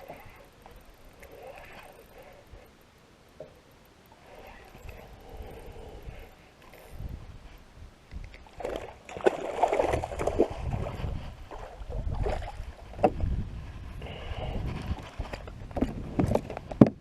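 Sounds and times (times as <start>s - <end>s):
water splashing: 8.4s - 13.0s.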